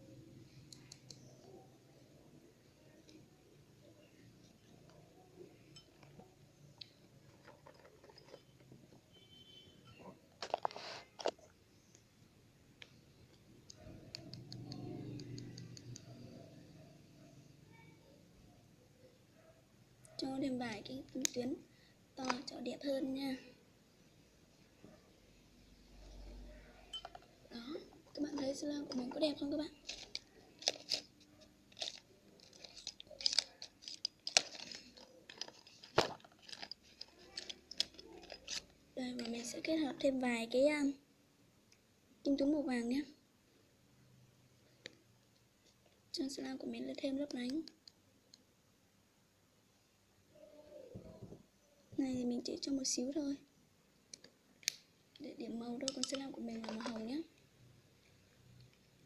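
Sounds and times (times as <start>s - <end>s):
soft rubbing handling noise: 10.4s - 11.9s
small clicks and crackles: 28.1s - 39.7s, 46.9s - 48.5s, 54.1s - 59.0s.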